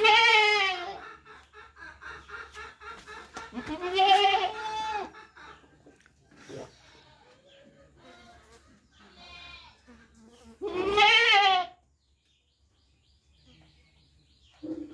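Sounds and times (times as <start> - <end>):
goat bleating: 0.0 - 1.0, 3.6 - 5.1, 9.1 - 9.8, 10.6 - 11.8.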